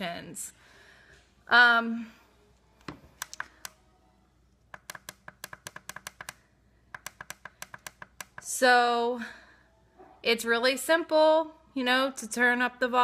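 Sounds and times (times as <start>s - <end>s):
speaker volume control clicking: 2.9s - 3.8s, 4.7s - 6.4s, 7.0s - 8.5s.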